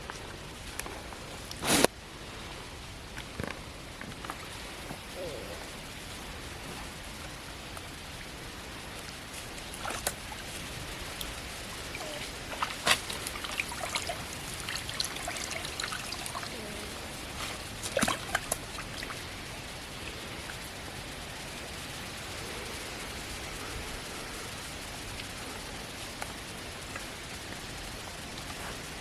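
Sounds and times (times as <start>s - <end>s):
steady hiss: 0.0s - 29.0s
water trickling and splashing: 4.1s - 29.0s
sharp splashes: 9.4s - 29.0s.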